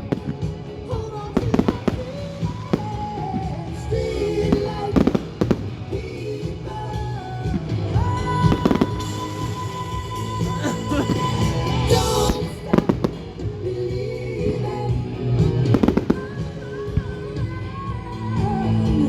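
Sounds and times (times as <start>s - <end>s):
fireworks bangs and crackles: 0.0s - 6.7s, 7.4s - 13.8s, 15.4s - 17.0s
loud music: 0.0s - 19.0s.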